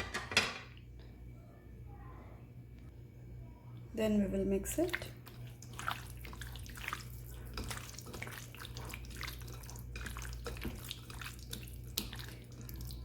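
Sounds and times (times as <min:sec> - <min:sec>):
wet squelches of mixing marinade: 0:03.8 - 0:13.0.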